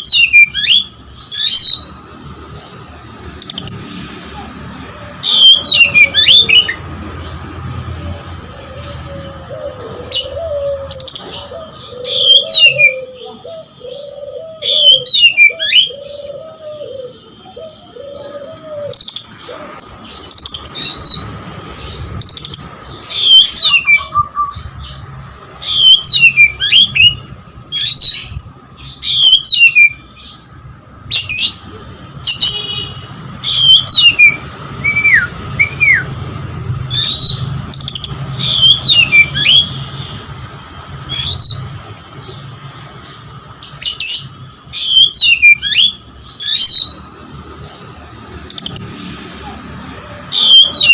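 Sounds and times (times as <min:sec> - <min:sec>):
magpie-robin singing: 0:00.0 - 0:02.1, 0:05.2 - 0:06.8, 0:10.1 - 0:19.5, 0:20.1 - 0:30.4, 0:33.2 - 0:36.1, 0:36.9 - 0:39.8, 0:41.1 - 0:41.7, 0:43.5 - 0:47.2, 0:50.2 - 0:50.9.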